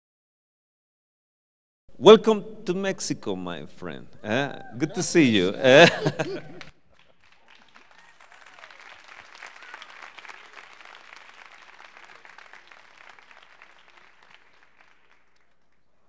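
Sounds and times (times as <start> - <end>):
quiet applause: 6.2 - 16.0.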